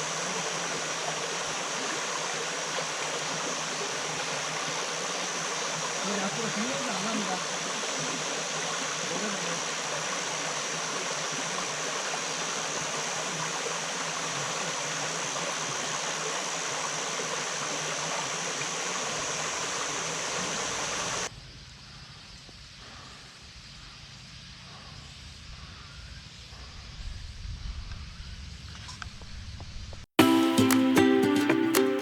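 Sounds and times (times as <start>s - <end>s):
stream running over rocks: 0.0s - 21.3s.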